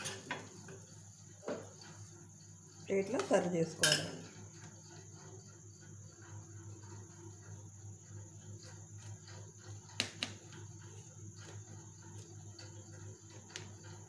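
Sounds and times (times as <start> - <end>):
kitchenware clicks: 3.2 - 4.2.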